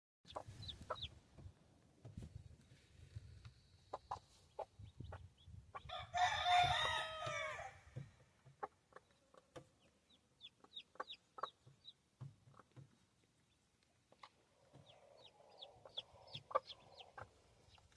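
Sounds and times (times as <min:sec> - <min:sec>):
chickens clucking: 0:00.3 - 0:01.6, 0:03.5 - 0:05.9, 0:08.0 - 0:17.9
rooster crowing: 0:05.9 - 0:07.9.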